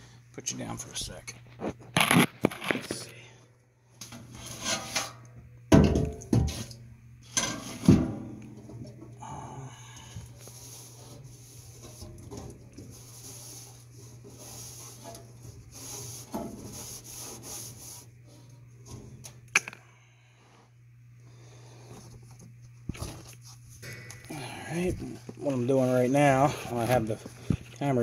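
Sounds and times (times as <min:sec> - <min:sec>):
scrubbing metal shelf: 0:10.6 - 0:19.1
low hum: 0:18.0 - 0:27.8.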